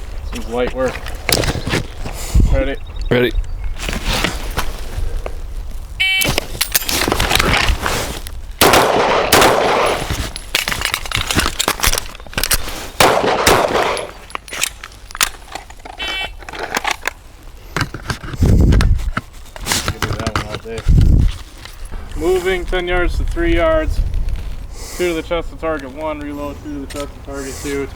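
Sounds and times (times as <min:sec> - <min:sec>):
shot timer beep: 0:06.0 - 0:06.3
suppressed rifle shots: 0:08.6 - 0:10.0, 0:13.0 - 0:14.2.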